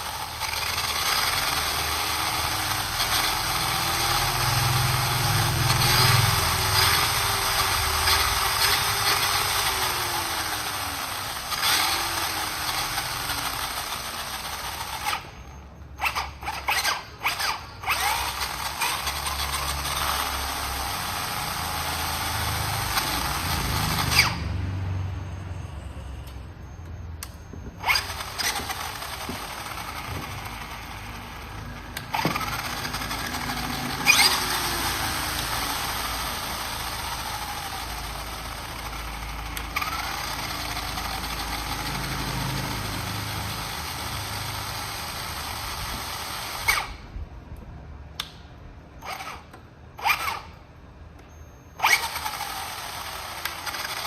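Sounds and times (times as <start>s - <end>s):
handheld power tool running: 0.0s - 24.8s, 27.8s - 47.2s, 49.0s - 50.6s, 51.8s - 54.0s.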